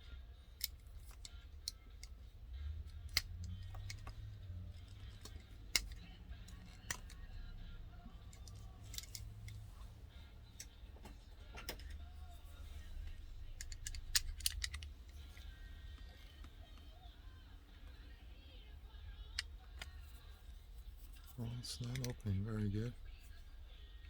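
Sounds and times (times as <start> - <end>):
model car clicks and taps: 2.8 - 7.5, 8.1 - 9.6, 13.5 - 16.8.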